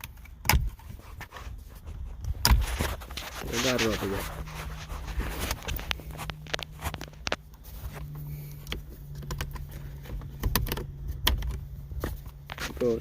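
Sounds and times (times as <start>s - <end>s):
steady low hum: 0.0s - 13.0s
plastic switches clicking and rattling: 8.6s - 12.2s.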